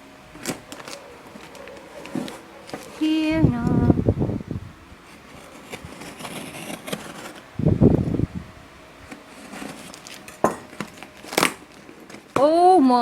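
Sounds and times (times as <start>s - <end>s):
packaging rustling and scraping: 0.3s - 3.3s, 5.0s - 8.1s, 9.0s - 12.5s.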